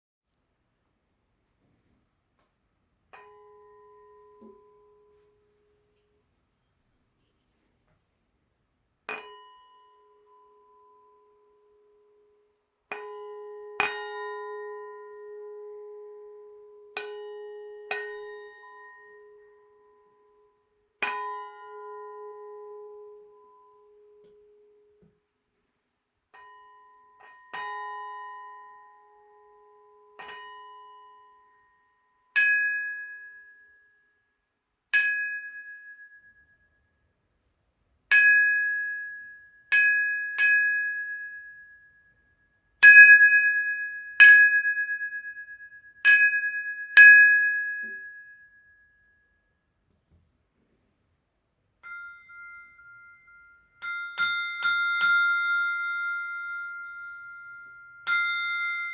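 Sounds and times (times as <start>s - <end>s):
crystal glasses ringing when struck: 3.2s - 6.0s, 9.1s - 12.1s, 12.9s - 24.9s, 26.4s - 33.6s, 35.0s - 36.6s, 38.1s - 41.8s, 51.8s - 58.9s.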